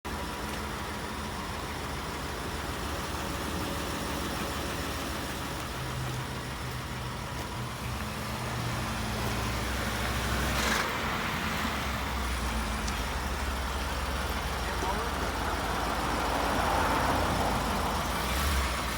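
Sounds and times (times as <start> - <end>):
engine running: 0.1 - 18.9.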